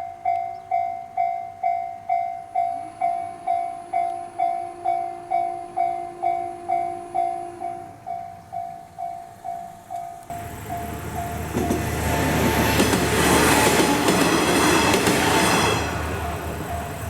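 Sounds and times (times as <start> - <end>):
level crossing warning bell: 0.0 - 17.0
train hum: 0.0 - 17.0.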